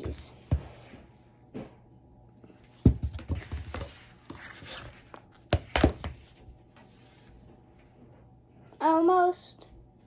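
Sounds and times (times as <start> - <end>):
book thumping and rustling: 2.8 - 6.3.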